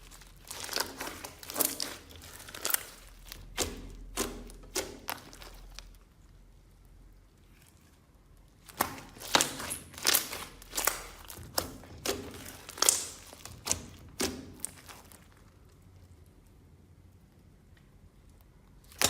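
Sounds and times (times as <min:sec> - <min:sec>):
slime popping and clicking: 0:00.5 - 0:05.9, 0:08.7 - 0:15.2.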